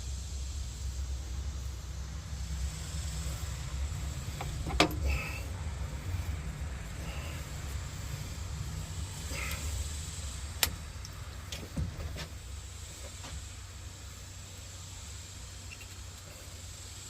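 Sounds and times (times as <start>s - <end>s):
low steady rumble: 0.0s - 17.0s.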